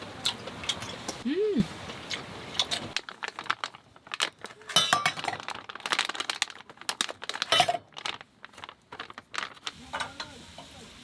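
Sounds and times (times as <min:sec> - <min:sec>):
camp cookware clinking: 0:00.3 - 0:01.2, 0:01.9 - 0:05.8, 0:06.4 - 0:08.2, 0:09.4 - 0:10.8.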